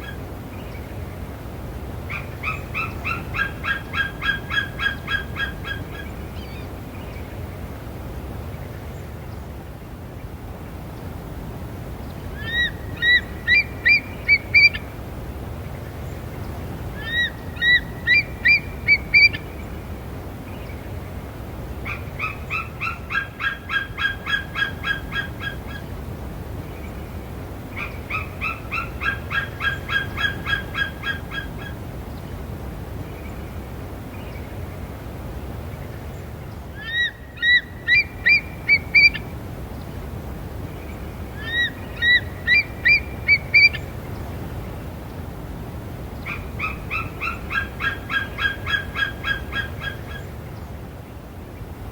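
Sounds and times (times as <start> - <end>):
eagle chittering calls: 2.1 - 6.6, 12.4 - 14.9, 17.0 - 19.5, 27.8 - 31.8, 36.8 - 39.3, 41.4 - 43.9, 46.2 - 50.3.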